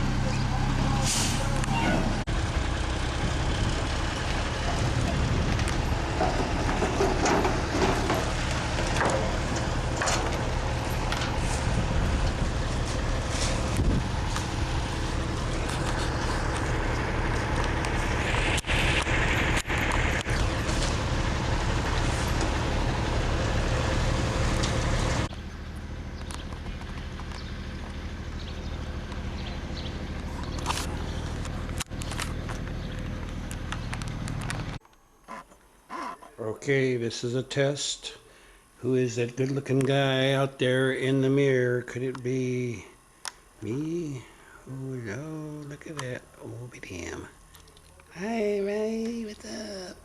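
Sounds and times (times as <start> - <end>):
diesel truck engine running: 0.0 - 34.8
clanks and knocks: 6.1 - 11.4.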